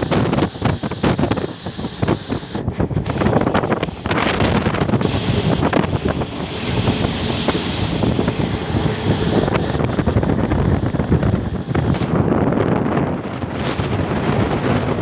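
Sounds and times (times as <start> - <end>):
train wheels rattling on track: 0.0 - 12.0
wind buffeting microphone: 0.0 - 15.0.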